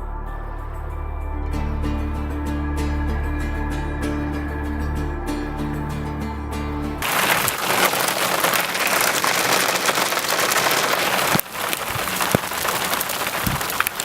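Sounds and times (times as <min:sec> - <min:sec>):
hailstones pelting: 0:07.0 - 0:14.0.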